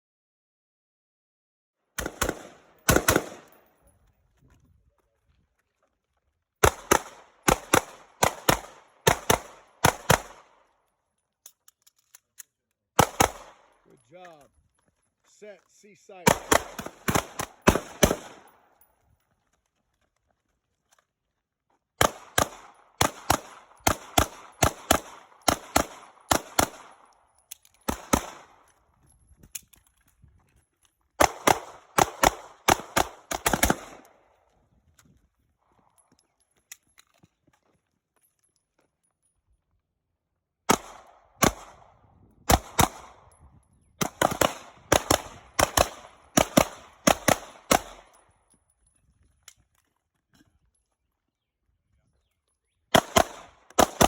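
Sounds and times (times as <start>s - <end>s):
rapid gunshots: 2.0s - 3.5s, 13.0s - 13.6s, 16.2s - 18.5s, 31.2s - 34.0s, 44.0s - 48.0s, 53.0s - 54.0s.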